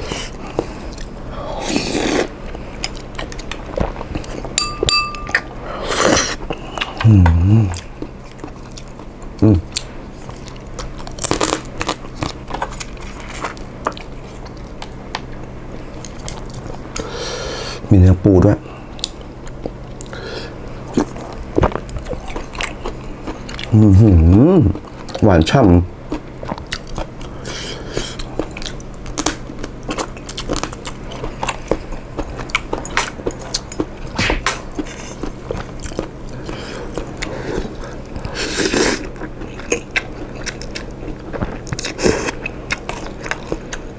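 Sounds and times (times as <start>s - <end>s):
utensils clinking against bowl: 4.6s - 5.5s
chewing with wet mouth clicks: 19.0s - 20.2s, 20.9s - 23.8s, 24.7s - 27.4s, 28.0s - 43.9s.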